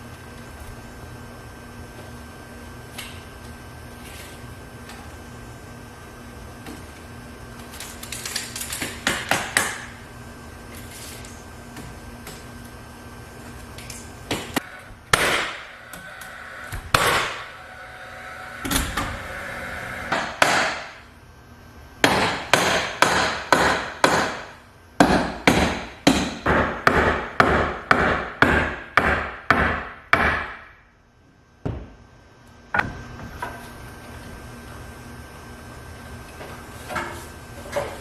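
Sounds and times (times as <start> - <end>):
hammer striking nails: 8.8 - 9.9, 15.1 - 15.6, 16.9 - 17.4, 20.1 - 20.9, 22.0 - 30.7.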